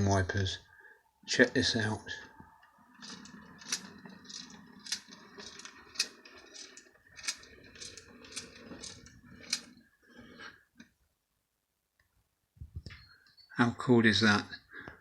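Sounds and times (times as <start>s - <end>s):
soft grinding whir: 2.2s - 10.6s
toy wiper mechanism clicking: 3.0s - 9.7s.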